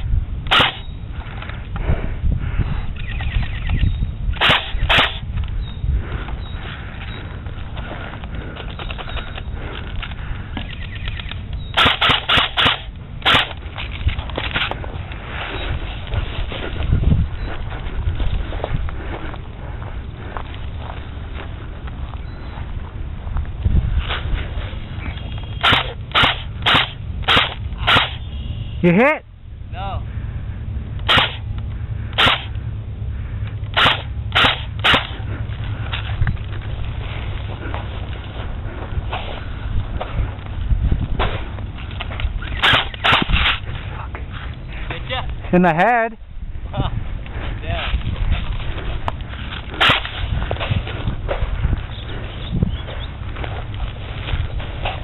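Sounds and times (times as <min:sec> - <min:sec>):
wind rumble on microphone: 0:00.0 - 0:55.0
airsoft guns firing: 0:00.5 - 0:00.9, 0:04.4 - 0:05.2, 0:11.8 - 0:13.6, 0:25.6 - 0:28.2, 0:31.0 - 0:31.4, 0:32.2 - 0:32.5, 0:33.7 - 0:35.2, 0:42.5 - 0:43.6.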